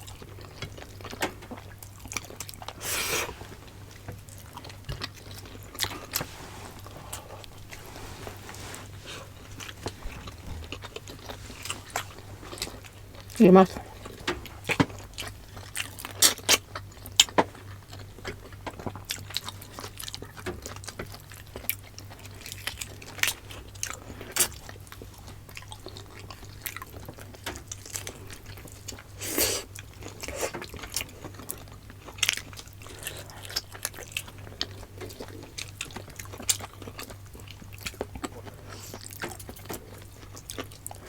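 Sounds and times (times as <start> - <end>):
steady low hum: 0.0 - 16.1
person chewing food: 0.0 - 41.0.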